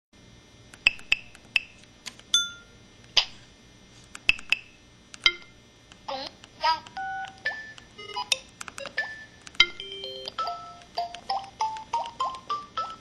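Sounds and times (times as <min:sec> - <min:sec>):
electronic clicks and blips: 0:06.9 - 0:13.0.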